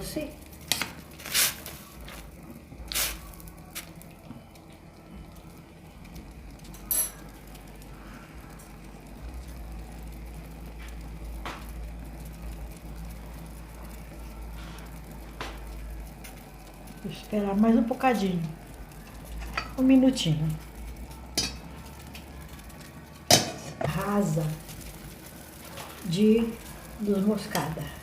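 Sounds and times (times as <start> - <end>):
steady low hum: 0.0 - 28.0
utensils clicking against pan: 19.2 - 24.6, 25.6 - 28.0.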